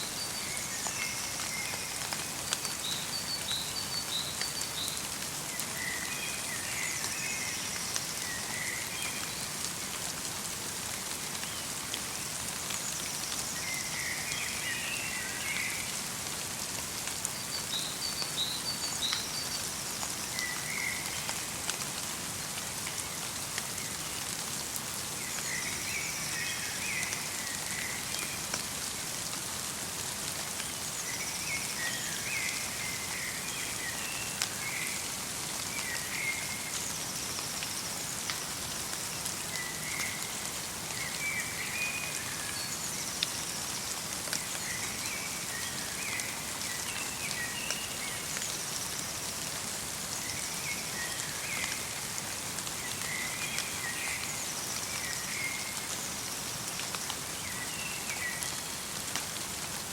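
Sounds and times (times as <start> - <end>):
light rain and snow falling: 0.0 - 59.9.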